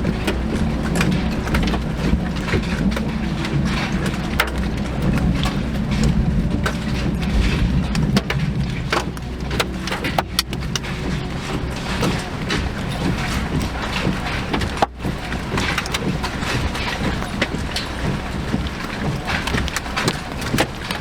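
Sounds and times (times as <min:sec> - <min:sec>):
moving vehicle rumble: 0:00.0 - 0:21.0
sharp ticks and knocks: 0:00.0 - 0:21.0.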